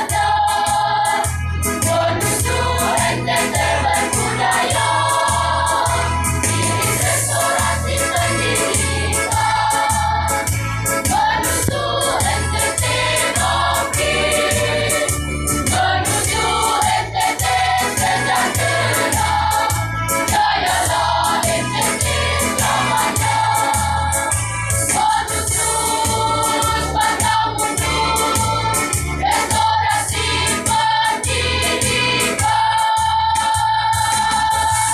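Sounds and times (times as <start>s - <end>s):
choir singing: 0.0s - 34.9s
steady low beat accompaniment: 0.0s - 34.9s.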